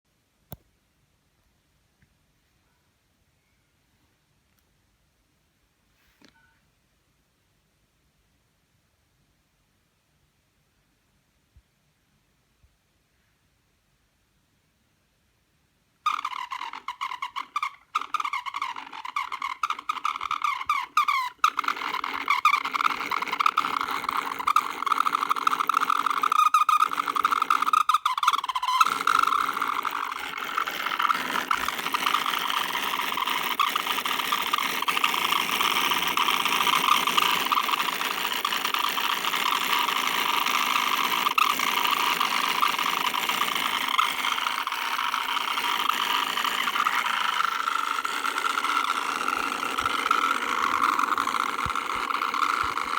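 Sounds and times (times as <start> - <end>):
fan vibrating noise: 16.0 - 52.9
laptop fan high-pitched whine: 16.2 - 52.9.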